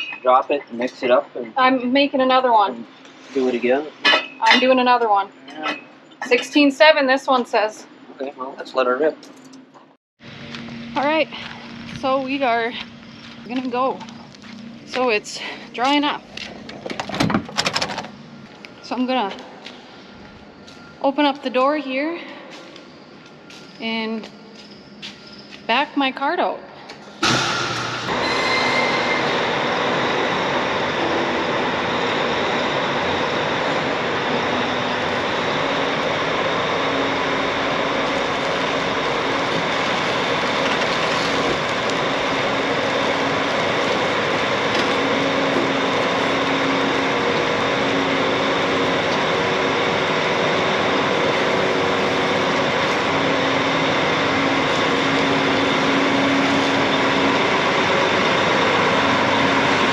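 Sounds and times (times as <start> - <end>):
tractor engine running: 29.3 - 59.9.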